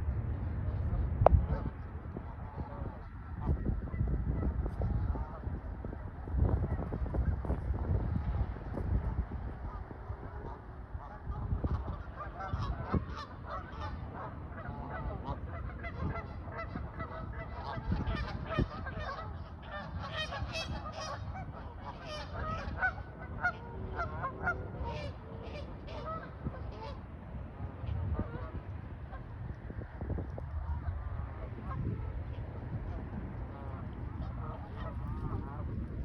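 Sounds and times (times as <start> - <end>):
geese honking: 8.9 - 29.3, 30.3 - 36.0.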